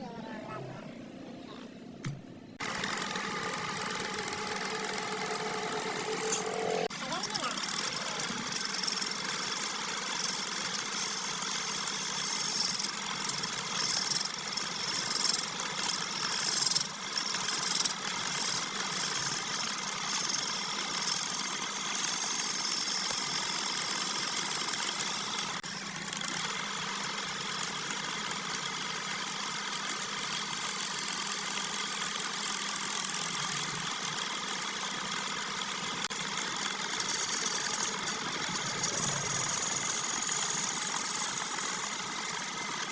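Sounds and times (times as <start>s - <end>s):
turning tool scraping wood: 2.6s - 25.6s
wood lathe running: 2.6s - 42.9s.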